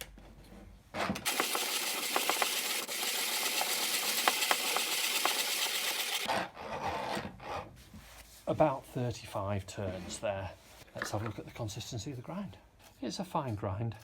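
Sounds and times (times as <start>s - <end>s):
coffee grinder crunching beans: 1.2s - 6.3s.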